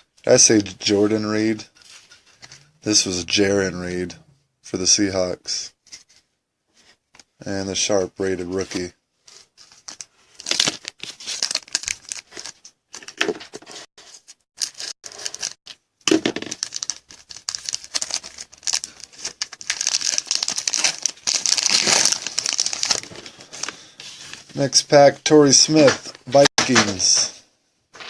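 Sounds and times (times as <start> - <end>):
wrapper tearing and crinkling: 9.8 - 13.1, 14.6 - 15.8, 16.4 - 23.7.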